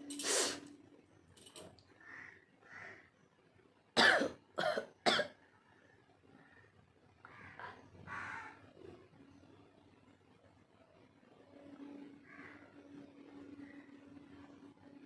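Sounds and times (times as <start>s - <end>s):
woman coughing: 4.0s - 5.4s.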